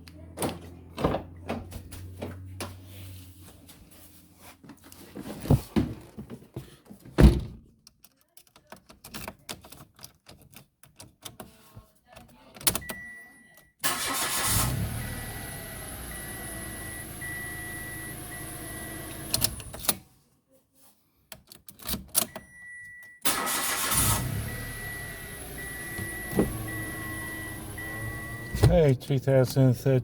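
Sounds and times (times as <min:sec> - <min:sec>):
handling clicks and knocks: 0:07.6 - 0:11.5
car chime beeping: 0:12.8 - 0:19.7, 0:22.3 - 0:29.0
car engine starting and idling: 0:13.8 - 0:19.9, 0:23.2 - 0:30.0
short beep: 0:24.2 - 0:28.8.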